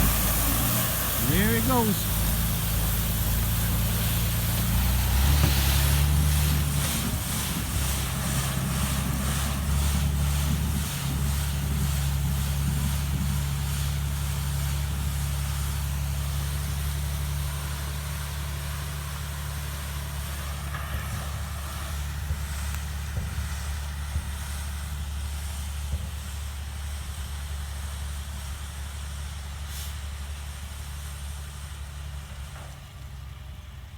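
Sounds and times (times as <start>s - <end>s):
heavy engine revving: 0.0s - 32.7s
short hiss: 29.7s - 30.1s.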